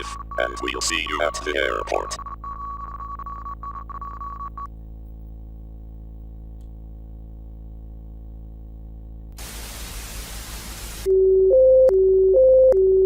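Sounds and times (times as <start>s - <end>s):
radio static burst: 0.0s - 2.2s
two-tone electronic alert: 0.0s - 4.6s.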